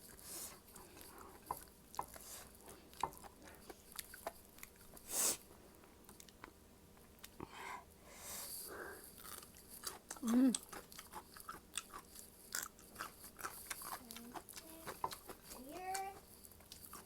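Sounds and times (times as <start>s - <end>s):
person chewing with wet clicks: 0.1s - 5.0s, 5.7s - 7.4s, 9.1s - 17.0s.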